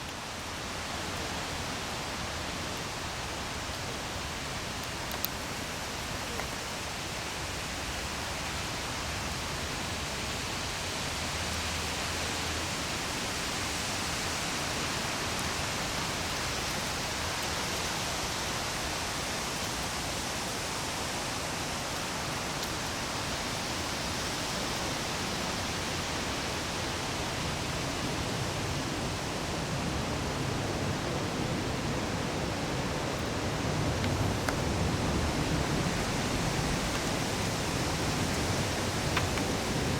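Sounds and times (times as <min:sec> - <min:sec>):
strong wind buffeting microphone: 0:24.3 - 0:39.9.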